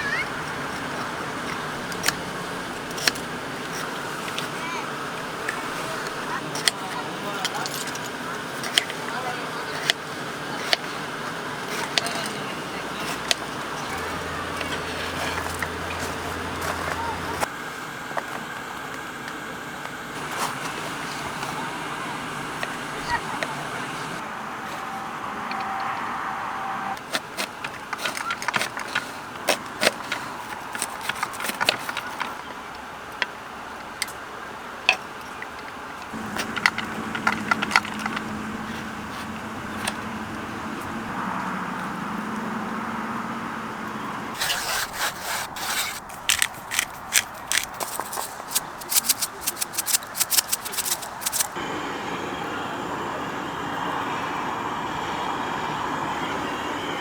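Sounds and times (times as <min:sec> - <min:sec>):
objects clicking and scraping: 0:00.4 - 0:04.6, 0:05.5 - 0:09.0, 0:11.6 - 0:17.5, 0:27.0 - 0:32.6, 0:34.9 - 0:40.0, 0:44.4 - 0:51.6
rapid clicks: 0:44.4 - 0:51.6.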